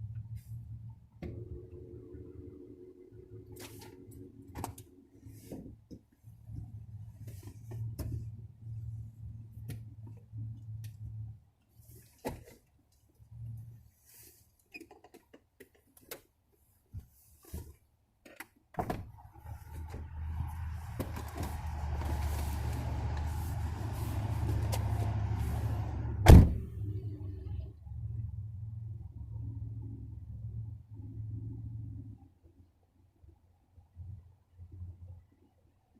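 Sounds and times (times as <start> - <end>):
loud thump: 26.2 - 26.7.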